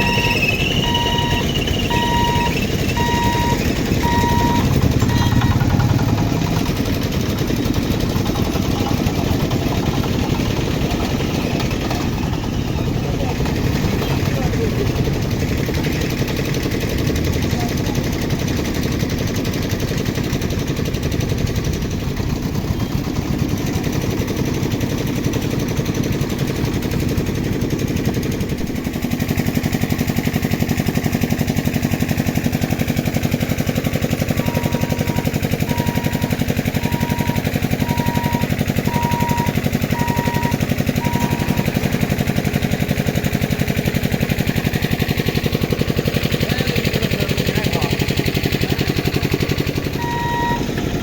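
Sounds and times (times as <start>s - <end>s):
short high beeps: 0.0s - 6.4s, 34.4s - 41.7s, 50.0s - 50.7s
train wheels clattering on rails: 3.8s - 30.0s.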